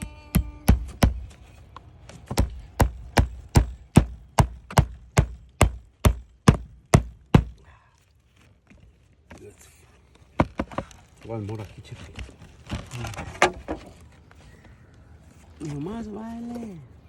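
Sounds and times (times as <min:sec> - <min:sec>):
hammer driving nail into wood: 0:00.0 - 0:01.4, 0:02.3 - 0:07.6.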